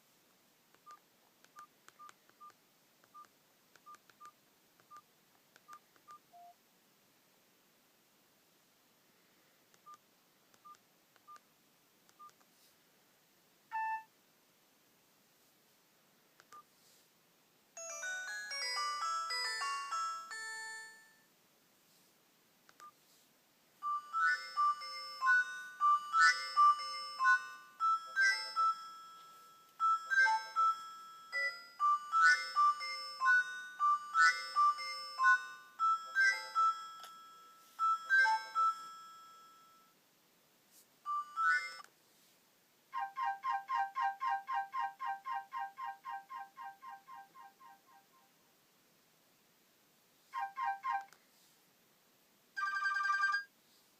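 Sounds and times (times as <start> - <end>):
faint keypad beeps: 5.7 - 6.6, 13.7 - 14.1, 50.4 - 51.1
electronic ringtone melody: 17.8 - 21.2, 23.8 - 39.9, 41.1 - 41.8, 43.0 - 48.0, 50.4 - 51.1, 52.6 - 53.5.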